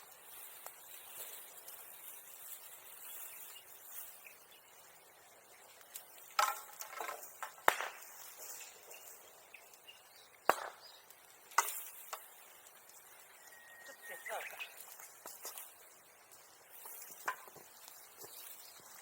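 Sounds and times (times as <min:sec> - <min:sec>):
sharp wooden cracks and knocks: 0:06.0 - 0:08.4, 0:10.4 - 0:12.3.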